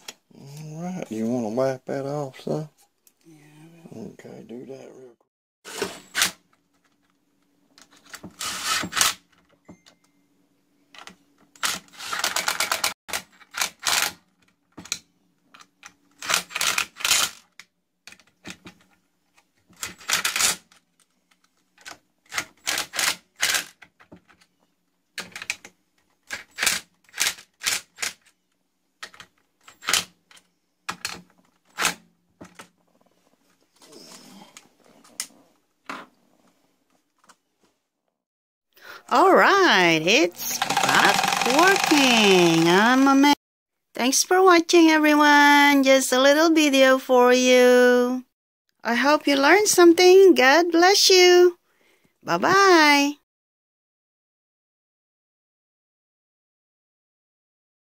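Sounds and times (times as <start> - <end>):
sewing machine clattering: 40.4 - 43.0.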